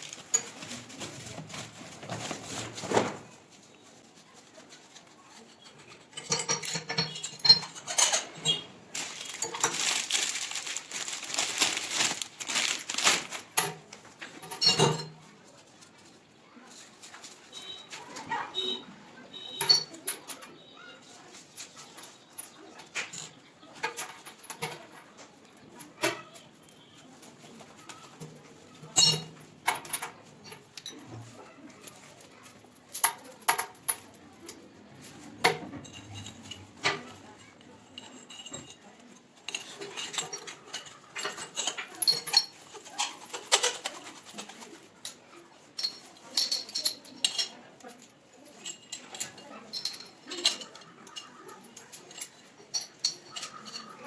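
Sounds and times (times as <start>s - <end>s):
metallic clinks of plumbing tools: 5.6s - 10.4s, 13.6s - 15.2s, 19.4s - 20.6s, 28.2s - 31.2s, 35.4s - 43.9s, 45.8s - 54.0s.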